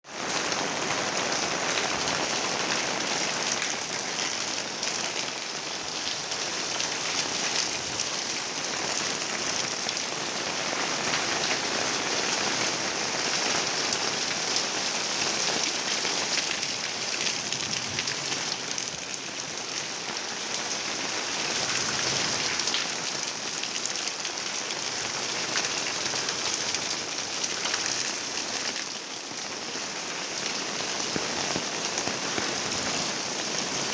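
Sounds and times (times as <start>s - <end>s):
steady rain pattering: 0.0s - 33.9s.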